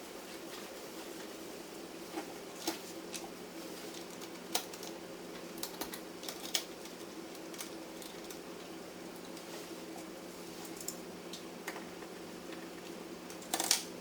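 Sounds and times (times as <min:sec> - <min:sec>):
steady low hum: 0:00.0 - 0:14.0
hands clicking and tapping parts: 0:03.9 - 0:08.4, 0:11.6 - 0:13.9.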